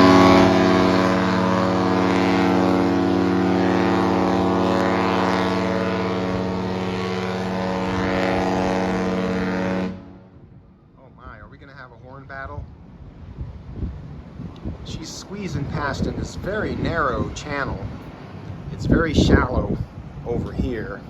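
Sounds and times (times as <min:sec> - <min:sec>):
ship horn blast: 0:00.0 - 0:10.8.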